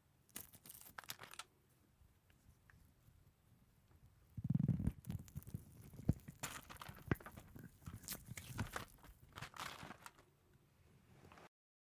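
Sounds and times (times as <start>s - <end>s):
eggshell cracking and peeling: 4.4s - 10.2s.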